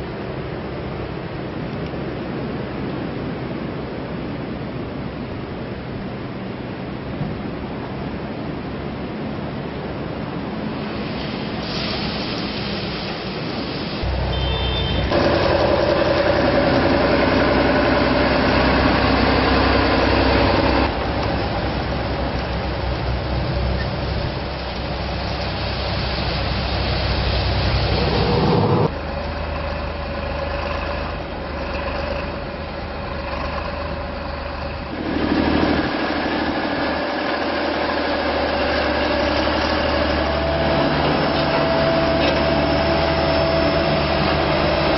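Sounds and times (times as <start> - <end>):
heavy machinery engines running: 10.7 - 44.9.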